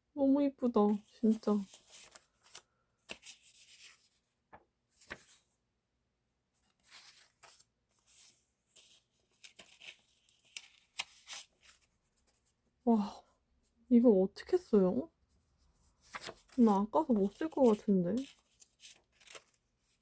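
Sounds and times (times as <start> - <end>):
paper rustling: 0.9 - 5.5, 6.6 - 12.6, 15.8 - 20.0.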